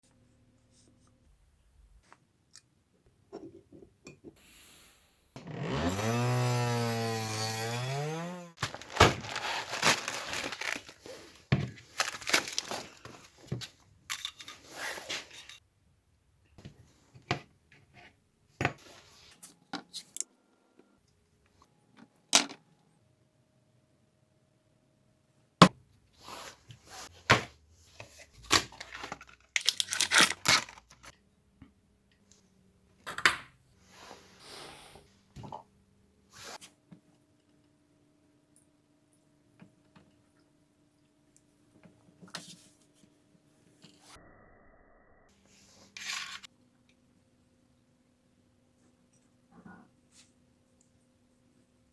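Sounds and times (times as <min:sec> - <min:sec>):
small electric motor humming: 0:05.4 - 0:08.6.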